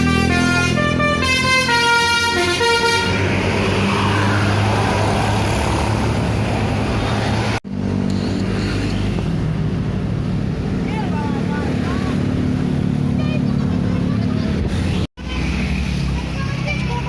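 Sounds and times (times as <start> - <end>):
bus musical horn: 0.0 - 3.3
bus engine drone: 0.0 - 17.0
road noise: 0.0 - 17.0.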